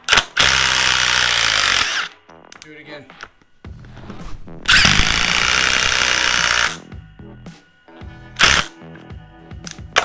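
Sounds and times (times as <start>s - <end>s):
impact driver hammering screw: 0.0s - 2.2s, 4.7s - 6.8s, 8.4s - 8.7s
background music: 0.0s - 10.0s.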